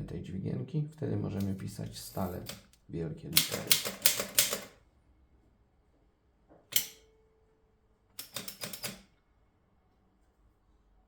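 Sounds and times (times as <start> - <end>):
manual typewriter typing: 1.4 - 2.8, 3.4 - 4.8, 8.2 - 9.0.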